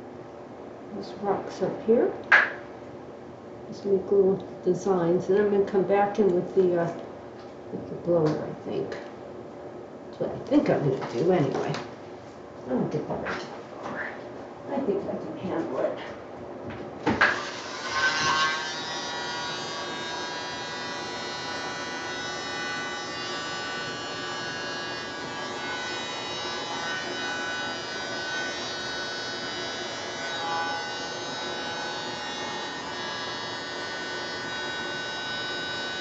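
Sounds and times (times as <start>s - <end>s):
electric air blower whining: 17.1s - 36.0s.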